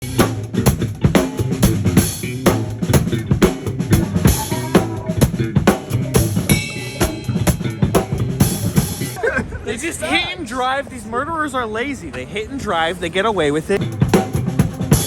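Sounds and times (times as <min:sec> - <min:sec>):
drum kit beat: 0:00.0 - 0:09.2, 0:13.8 - 0:15.0
sustained bass line: 0:00.0 - 0:09.2, 0:13.8 - 0:15.0.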